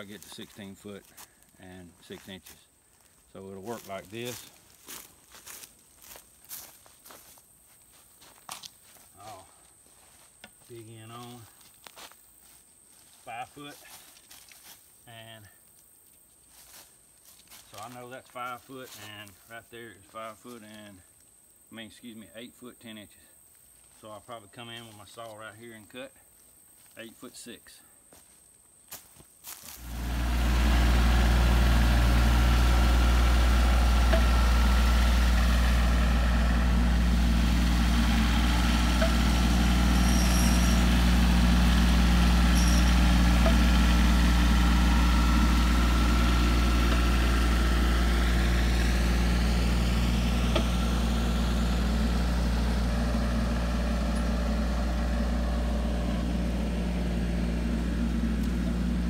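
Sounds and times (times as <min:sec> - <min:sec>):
sawmill engine idling: 0:29.8 - 0:59.0.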